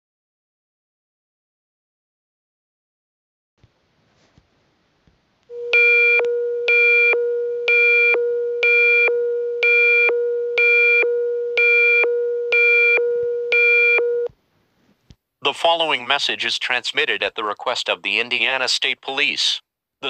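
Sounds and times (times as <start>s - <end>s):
steady low alert tone: 5.5s - 14.3s.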